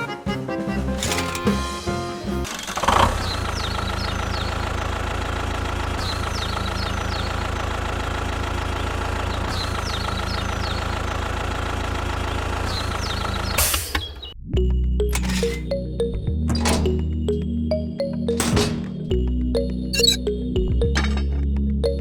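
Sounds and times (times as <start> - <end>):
engine idling: 2.4 - 13.6.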